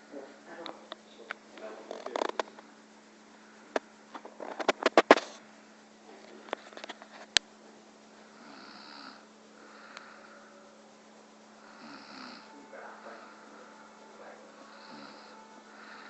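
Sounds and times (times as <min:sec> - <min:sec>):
steady low hum: 0:00.0 - 0:16.0
person snoring: 0:08.3 - 0:10.8, 0:11.6 - 0:16.0.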